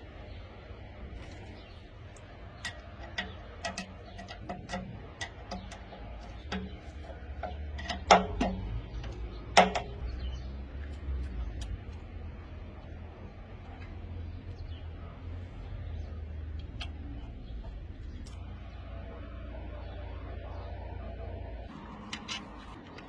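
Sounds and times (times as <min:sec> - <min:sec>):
tools clicking and tapping: 0:02.2 - 0:10.2.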